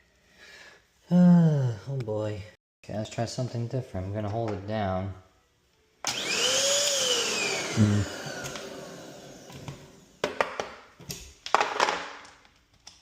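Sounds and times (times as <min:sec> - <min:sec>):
vacuum motor whine: 0:06.0 - 0:10.2.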